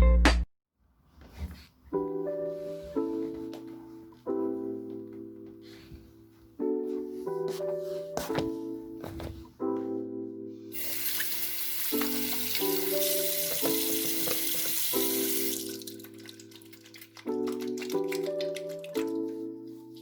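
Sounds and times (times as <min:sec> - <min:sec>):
water running from a tap: 0:10.7 - 0:19.3.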